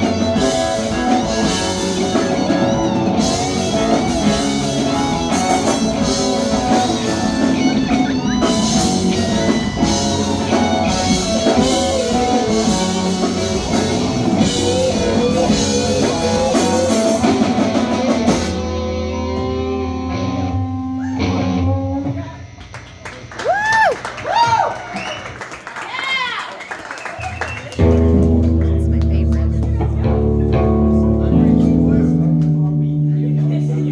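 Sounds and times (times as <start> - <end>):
drum kit: 0.0 - 20.0, 27.7 - 33.9
bass guitar: 0.0 - 24.6, 27.7 - 33.9
electric guitar: 0.0 - 25.8, 27.2 - 33.9.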